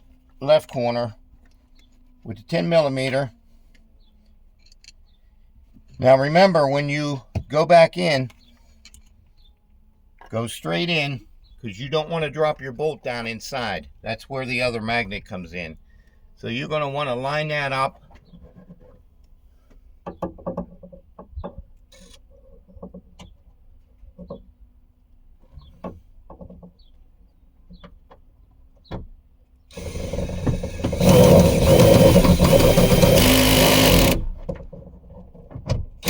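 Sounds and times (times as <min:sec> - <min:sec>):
motorized driver running bolt: 0:29.7 - 0:34.6.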